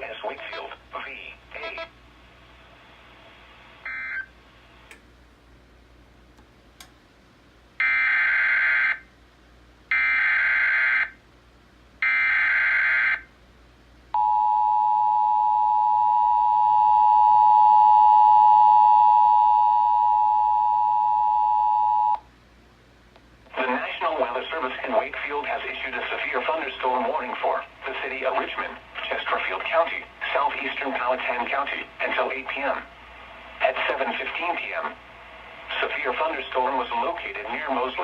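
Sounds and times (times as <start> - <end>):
two-tone alarm signal: 14.2 - 22.2.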